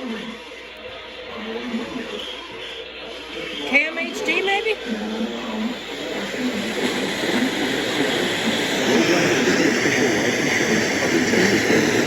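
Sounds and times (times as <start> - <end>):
radio static hiss: 3.2 - 12.0.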